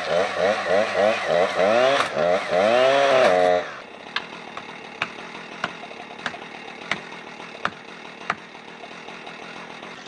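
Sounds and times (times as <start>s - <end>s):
chainsaw idling: 0.0s - 10.0s
hammer knocking on wedge: 4.2s - 8.5s.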